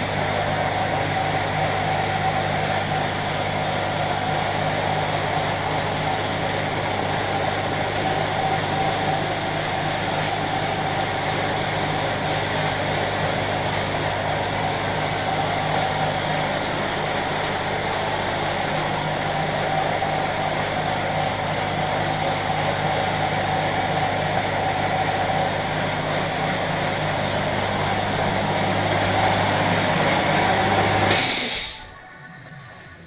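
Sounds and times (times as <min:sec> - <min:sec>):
air compressor motor running: 0:00.0 - 0:32.0
sharp hiss of air: 0:07.1 - 0:18.9, 0:31.1 - 0:31.9.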